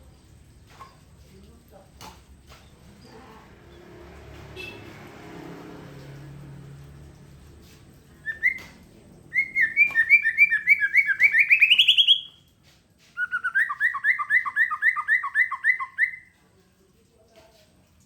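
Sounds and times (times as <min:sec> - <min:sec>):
songbird whistling: 0:08.2 - 0:12.4, 0:13.2 - 0:16.3.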